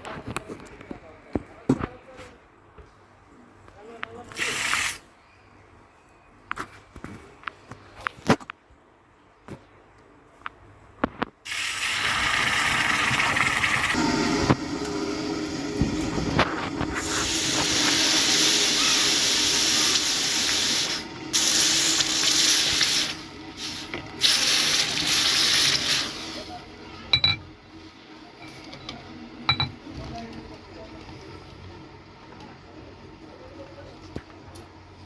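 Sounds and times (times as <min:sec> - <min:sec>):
hot steel hissing in water: 0:11.5 - 0:26.8.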